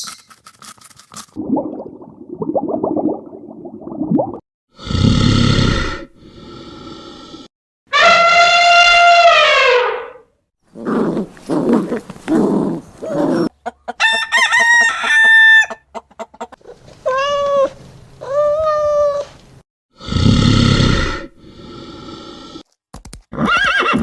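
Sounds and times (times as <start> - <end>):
long animal call: 10.8 - 13.5
low rough animal calls: 10.8 - 13.5.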